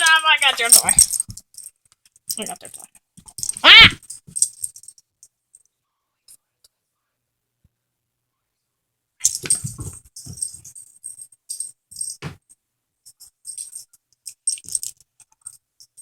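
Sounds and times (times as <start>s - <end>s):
dog collar tags jingling: 0.0s - 5.0s, 9.2s - 12.2s, 13.1s - 16.0s.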